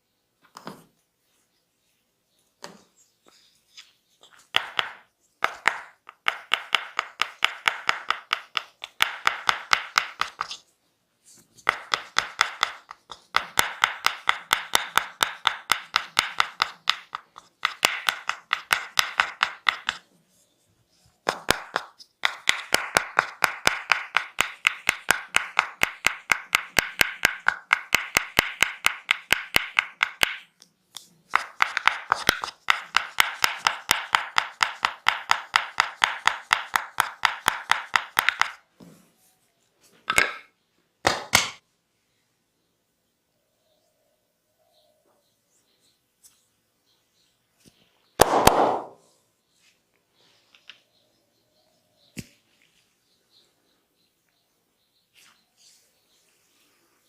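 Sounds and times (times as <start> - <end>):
hands slapping body in massage: 48.2 - 49.0.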